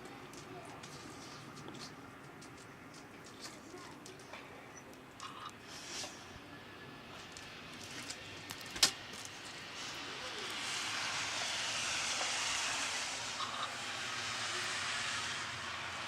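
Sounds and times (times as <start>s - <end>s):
rushing hiss: 5.6s - 6.3s, 8.9s - 16.0s.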